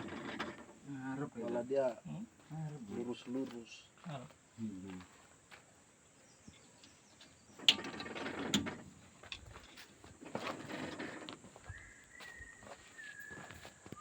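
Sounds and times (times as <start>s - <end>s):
thin high whistle tone: 11.8s - 14.0s.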